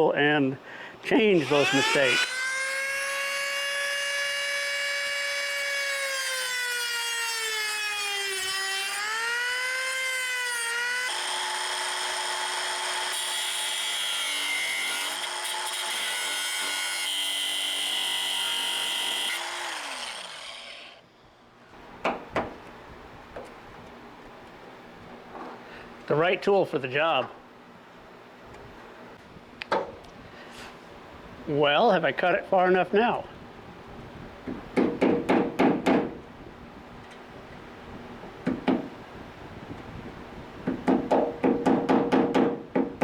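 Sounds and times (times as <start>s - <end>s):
rotary tool grinding: 1.4s - 21.0s
rotary tool whining: 1.4s - 21.0s
sharp knocks: 34.5s - 36.2s, 40.7s - 43.0s.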